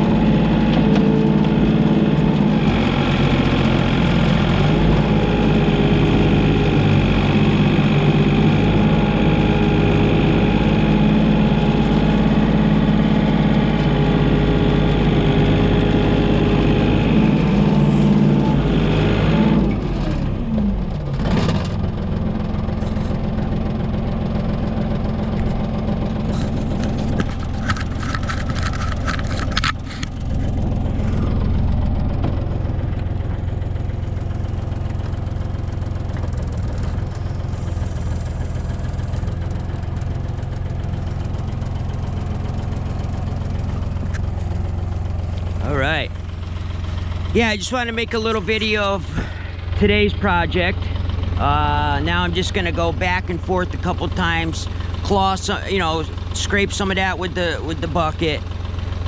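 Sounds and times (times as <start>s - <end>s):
excavator diesel engine running: 0.0s - 59.0s
sharp clicks and cracks: 26.2s - 30.6s.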